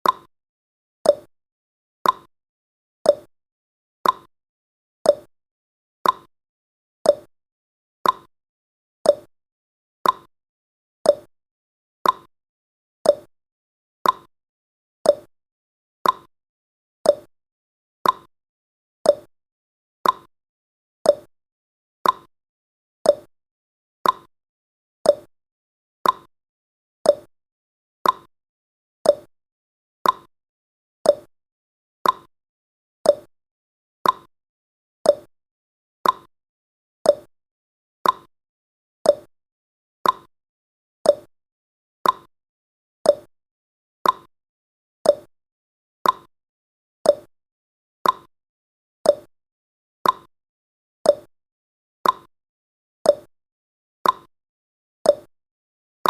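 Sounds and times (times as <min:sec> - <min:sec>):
clock ticking: 0:40.0 - 0:40.3, 0:46.0 - 0:46.3, 0:48.0 - 0:48.3.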